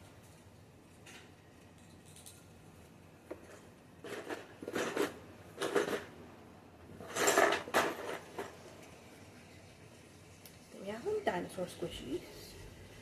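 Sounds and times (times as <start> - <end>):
plastic pieces clattering: 3.4 - 6.1, 7.0 - 8.6.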